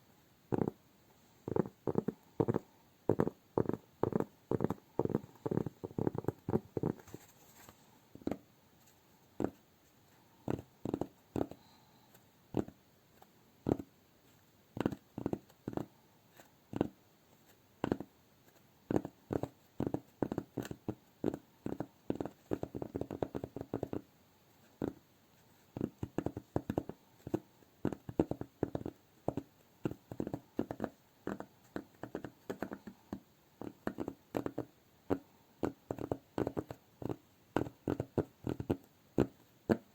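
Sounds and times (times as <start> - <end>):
fingers tapping on cork: 0.5 - 0.8, 1.4 - 7.2, 8.2 - 8.4, 9.4 - 9.6, 10.4 - 11.8, 12.5 - 12.8, 13.6 - 13.9, 14.7 - 17.0, 17.8 - 18.1, 18.9 - 24.1, 24.7 - 25.0, 25.7 - 39.9
rubbing on cork: 1.4 - 9.6.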